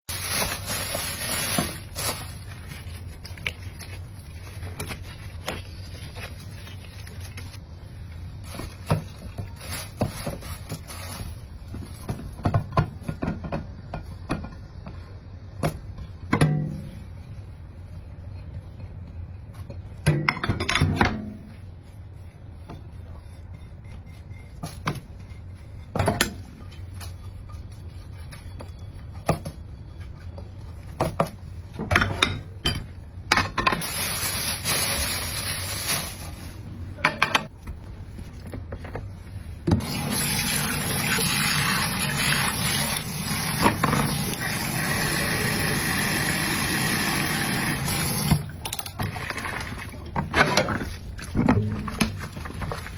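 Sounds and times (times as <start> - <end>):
water running from a tap: 39.8 - 48.4.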